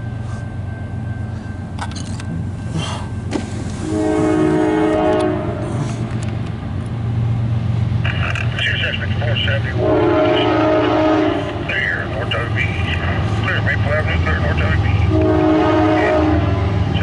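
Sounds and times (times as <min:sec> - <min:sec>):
diesel locomotives rumbling: 0:00.0 - 0:17.0
train air horn blast: 0:03.8 - 0:06.1, 0:09.8 - 0:12.0, 0:15.0 - 0:16.9.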